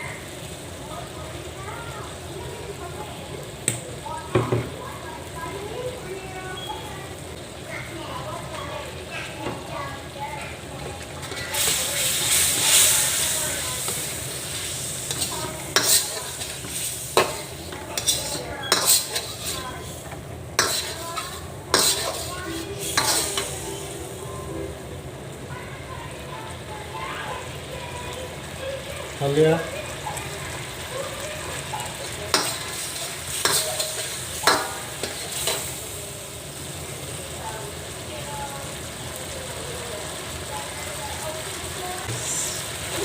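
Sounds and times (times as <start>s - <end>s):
vegetables sizzling: 0.0s - 43.0s
spatula scraping a pan: 10.4s - 23.7s, 31.8s - 35.8s.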